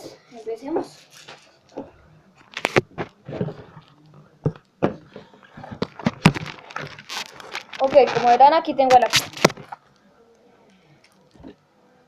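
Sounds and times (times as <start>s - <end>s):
small objects knocking: 4.4s - 9.8s.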